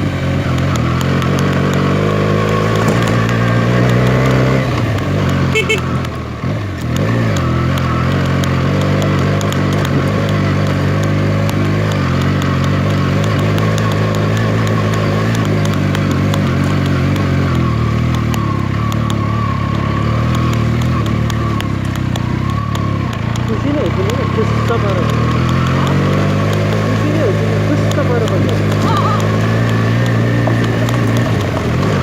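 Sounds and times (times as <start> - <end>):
motorcycle engine running: 0.0 - 32.0
small clicks: 6.8 - 32.0.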